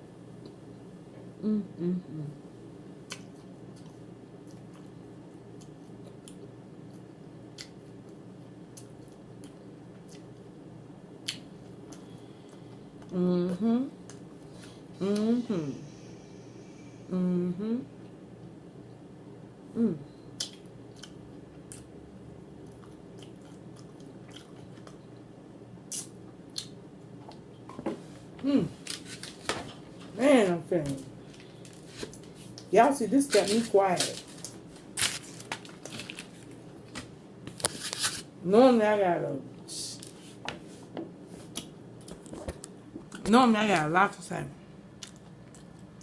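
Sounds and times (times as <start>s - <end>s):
low steady hum: 0.0s - 46.0s
person chewing food: 3.1s - 10.5s, 20.4s - 22.0s, 22.6s - 25.3s, 45.0s - 46.0s
crisp crunches: 33.4s - 38.3s.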